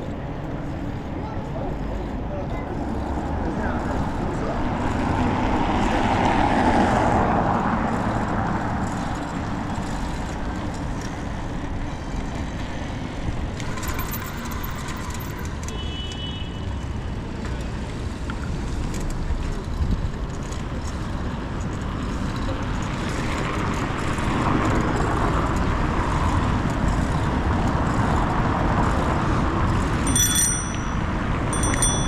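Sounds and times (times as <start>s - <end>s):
traffic rumble: 0.0s - 32.0s
car passing: 2.8s - 10.5s.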